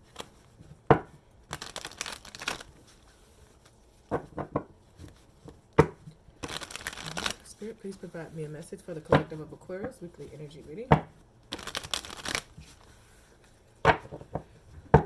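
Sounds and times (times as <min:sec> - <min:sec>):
cards shuffling: 0:01.5 - 0:04.1, 0:05.0 - 0:10.9, 0:11.5 - 0:14.4.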